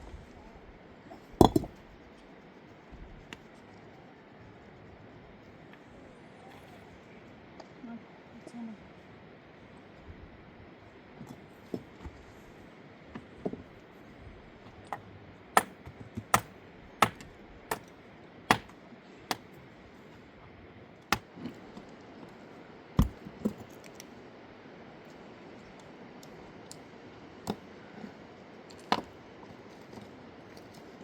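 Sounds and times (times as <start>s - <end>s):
hard objects knocking together: 1.4s - 1.8s.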